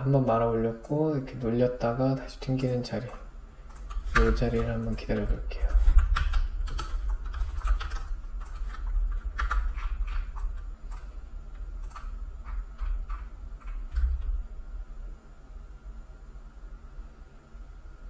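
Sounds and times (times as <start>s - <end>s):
steady low hum: 0.0s - 18.0s
computer mouse clicking: 2.6s - 11.1s, 11.8s - 14.4s.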